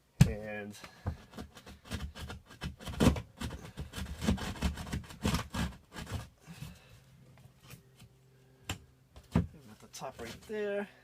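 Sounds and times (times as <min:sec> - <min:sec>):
hand saw cutting drywall: 0:01.4 - 0:06.3.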